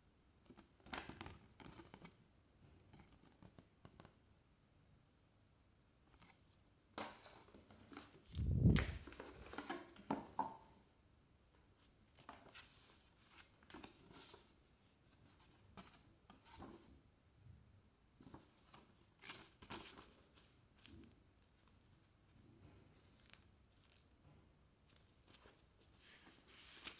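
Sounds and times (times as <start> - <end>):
handling thump: 8.3 - 9.1.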